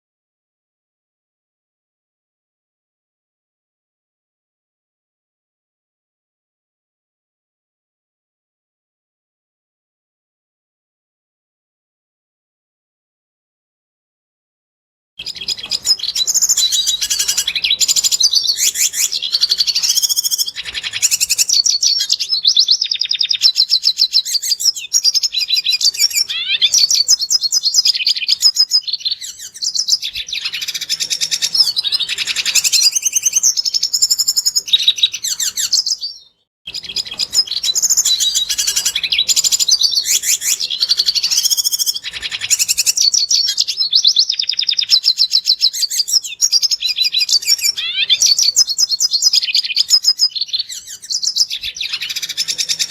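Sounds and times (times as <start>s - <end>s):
bird twittering and trilling: 15.2s - 52.9s.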